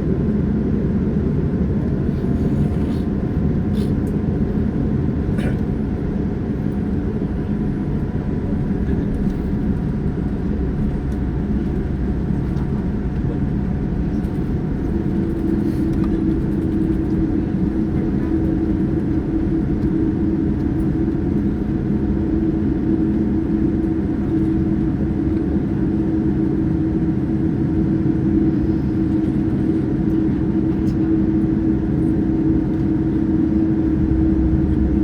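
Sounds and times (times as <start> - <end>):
steady hum: 0.0 - 19.8, 28.0 - 35.0
airliner cabin rumble: 0.0 - 35.0.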